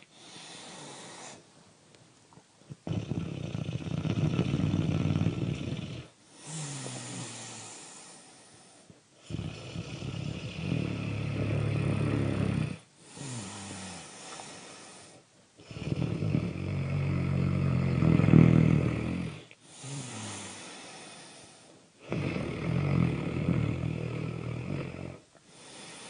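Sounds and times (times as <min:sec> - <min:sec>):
wheezy breath: 0:00.0 - 0:01.5, 0:06.3 - 0:09.0, 0:13.0 - 0:15.3, 0:19.6 - 0:21.9, 0:25.5 - 0:26.0
loud rattling snores: 0:02.8 - 0:08.3, 0:09.2 - 0:14.9, 0:15.6 - 0:21.4, 0:22.0 - 0:26.0.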